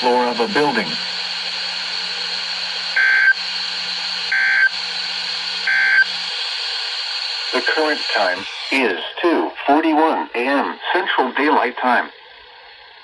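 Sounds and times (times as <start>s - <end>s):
electronic data bursts: 0.0s - 2.2s, 7.5s - 9.0s
low hum: 0.0s - 11.0s
static hiss: 0.0s - 13.0s.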